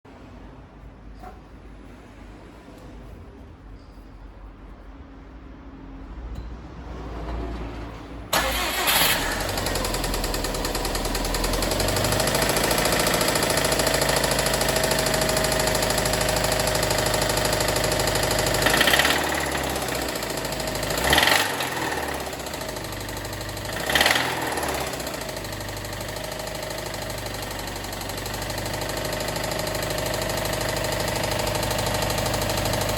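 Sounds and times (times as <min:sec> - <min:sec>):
car engine knocking: 0:09.4 - 0:32.9.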